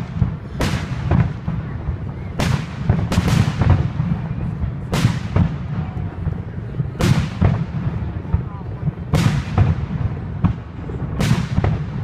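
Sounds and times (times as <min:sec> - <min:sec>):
fireworks booming: 0:00.0 - 0:12.0.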